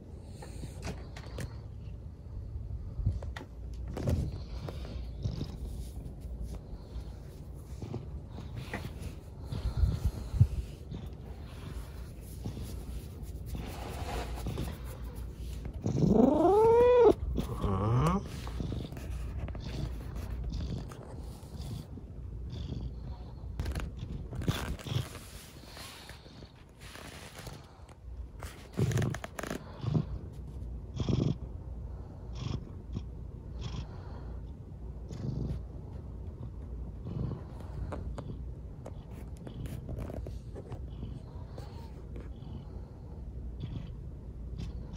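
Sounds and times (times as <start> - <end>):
cat purring: 3.8 - 44.9
cat meowing: 16.2 - 17.2.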